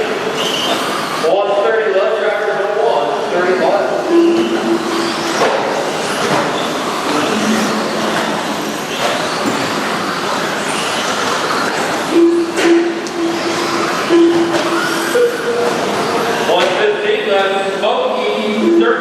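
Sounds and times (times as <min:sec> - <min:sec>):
low pulsing tone: 0:07.1 - 0:08.5.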